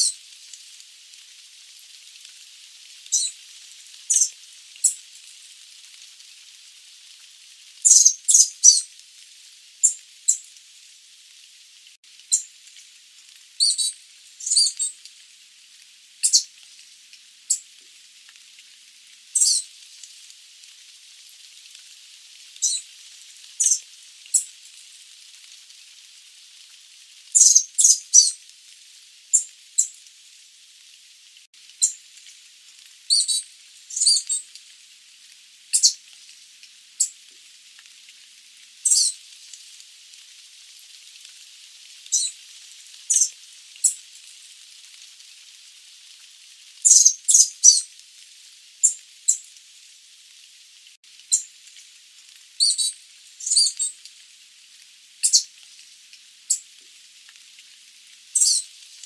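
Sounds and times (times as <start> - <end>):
steady hiss: 0.0 - 59.0
bird high-pitched calls: 3.1 - 3.4, 4.1 - 5.0, 7.9 - 8.9, 13.6 - 15.0, 16.2 - 16.5, 19.4 - 19.7, 22.6 - 22.8, 23.6 - 24.5, 27.4 - 28.4, 33.1 - 34.4, 35.8 - 36.0, 38.9 - 39.2, 43.1 - 44.0, 46.9 - 47.8, 52.6 - 53.9, 55.2 - 55.5, 58.4 - 58.7.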